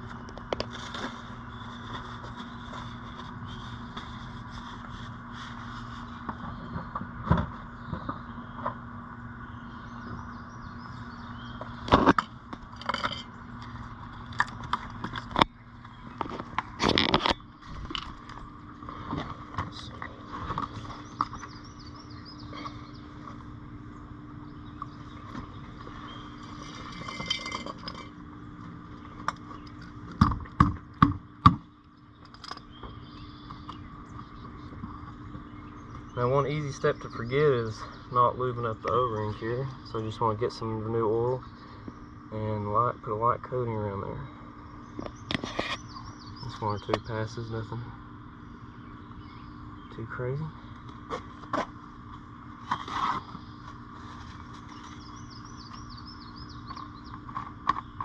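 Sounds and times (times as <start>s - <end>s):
steady low hum: 0.0s - 58.0s.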